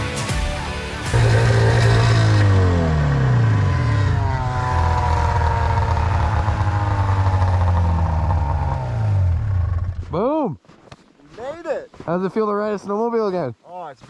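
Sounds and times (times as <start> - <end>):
snowmobile engine running: 0.9 - 10.2.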